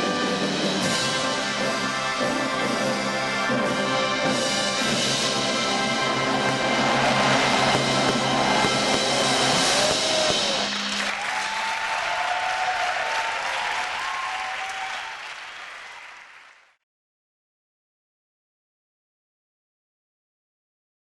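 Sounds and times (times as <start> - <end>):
wind band holding chord: 1.1 - 11.1
crowd applauding: 5.5 - 16.8.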